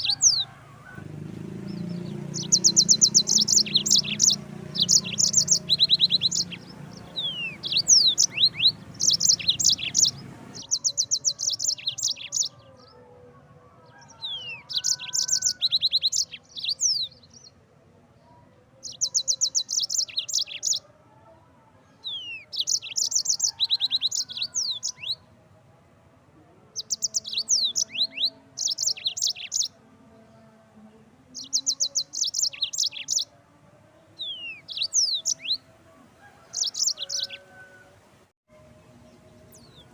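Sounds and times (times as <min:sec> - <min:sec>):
canary singing trills and whistles: 0:00.0 - 0:00.5, 0:01.7 - 0:12.9, 0:13.9 - 0:17.6, 0:18.8 - 0:20.8, 0:22.0 - 0:25.2, 0:26.8 - 0:29.8, 0:31.3 - 0:33.3, 0:34.2 - 0:35.6, 0:36.3 - 0:37.7.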